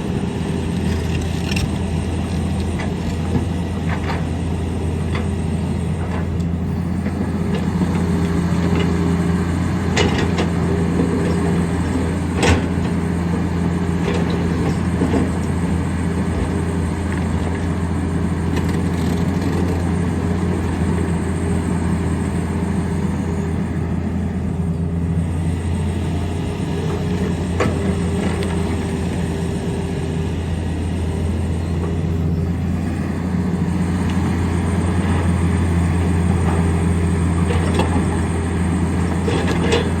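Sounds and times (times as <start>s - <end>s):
excavator diesel engine running: 0.0s - 40.0s.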